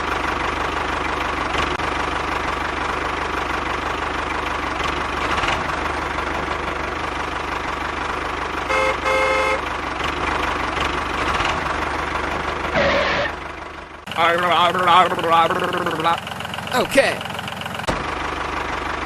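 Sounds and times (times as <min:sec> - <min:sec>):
short horn toots: 0:08.7 - 0:09.6, 0:12.8 - 0:13.4.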